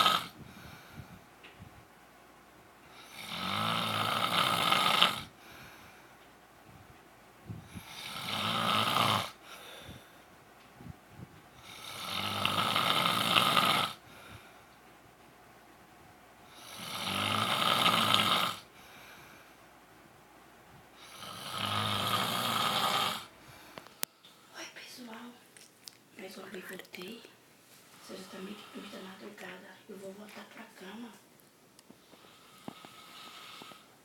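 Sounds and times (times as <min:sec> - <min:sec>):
man snoring: 0:00.0 - 0:00.4, 0:02.9 - 0:05.4, 0:07.7 - 0:09.4, 0:11.6 - 0:14.0, 0:16.5 - 0:18.7, 0:21.0 - 0:23.3, 0:32.2 - 0:33.9
quiet breathing: 0:00.0 - 0:01.6, 0:05.2 - 0:06.4, 0:09.3 - 0:12.1, 0:13.9 - 0:15.0, 0:18.6 - 0:19.8, 0:22.4 - 0:25.2, 0:27.1 - 0:31.1, 0:31.8 - 0:34.0.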